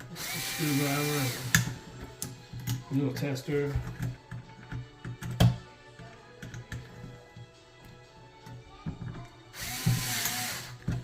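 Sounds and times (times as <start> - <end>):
background music: 0.0 - 11.0
cordless drill running: 0.1 - 1.6, 9.5 - 10.8
hand tool clicks and taps: 1.5 - 2.8, 3.8 - 6.9.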